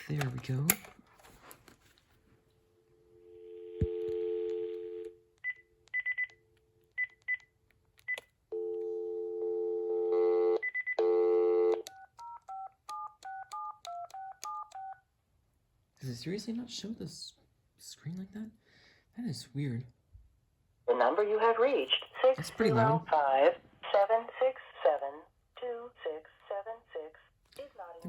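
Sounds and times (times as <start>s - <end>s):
telephone dial tone hum: 3.2s - 5.2s, 8.5s - 14.8s
touch-tone digits dialed: 10.6s - 15.0s.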